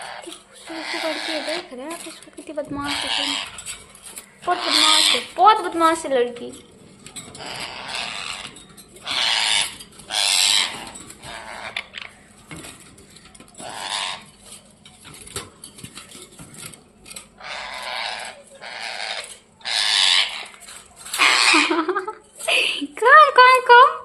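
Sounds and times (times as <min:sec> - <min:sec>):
parrot screeching: 0:00.0 - 0:05.8, 0:07.3 - 0:11.9, 0:13.6 - 0:14.4, 0:17.4 - 0:22.7.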